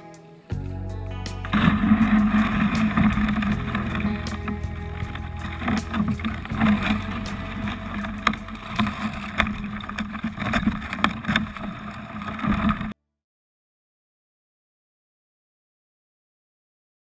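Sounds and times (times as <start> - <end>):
water washing: 1.4 - 12.9
wind on microphone: 1.4 - 12.9.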